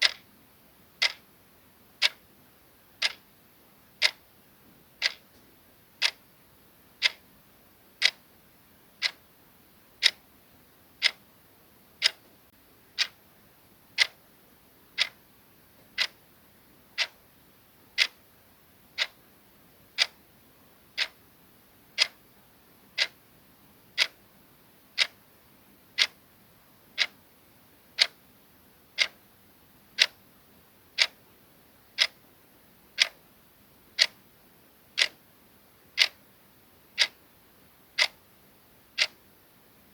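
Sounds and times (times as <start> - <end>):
clock ticking: 0.0 - 0.3, 1.0 - 1.2, 2.0 - 2.3, 3.0 - 3.2, 4.0 - 4.3, 5.0 - 5.4, 6.0 - 6.2, 7.0 - 7.2, 8.0 - 8.2, 9.0 - 9.2, 10.0 - 10.2, 11.0 - 11.2, 12.0 - 12.3, 13.0 - 13.2, 14.0 - 14.2, 15.0 - 15.2, 15.9 - 16.2, 17.0 - 17.2, 17.9 - 18.2, 18.9 - 19.2, 20.0 - 20.2, 20.9 - 21.2, 22.0 - 22.2, 23.0 - 23.2, 24.0 - 24.2, 25.0 - 25.2, 26.0 - 26.2, 26.9 - 27.2, 28.0 - 28.2, 29.0 - 29.2, 29.9 - 30.2, 31.0 - 31.2, 31.9 - 32.2, 32.9 - 33.2, 34.0 - 34.2, 35.0 - 35.2, 36.0 - 36.2, 37.0 - 37.2, 38.0 - 38.2, 39.0 - 39.2.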